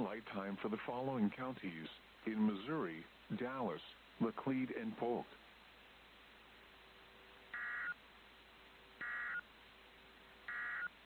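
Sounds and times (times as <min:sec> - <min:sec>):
faint radio hiss: 0:00.0 - 0:11.0.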